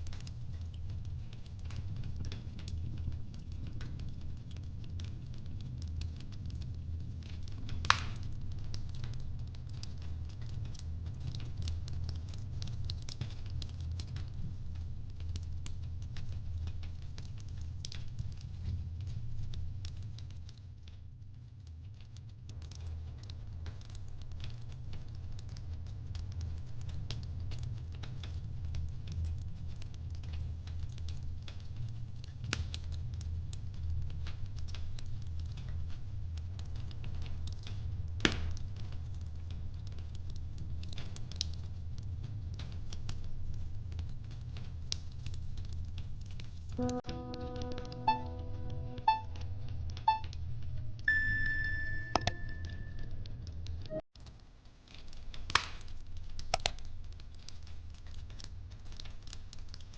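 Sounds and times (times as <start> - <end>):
wood fire crackling: 0.0 - 59.9
music: 46.8 - 50.4, 51.0 - 54.0.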